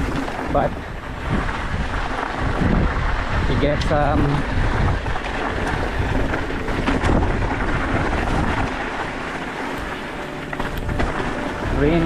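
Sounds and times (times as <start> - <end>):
bike clicks and rattles: 0.0 - 11.9
bike tyres rolling on dirt: 0.0 - 12.0
wind buffeting microphone: 0.0 - 12.0.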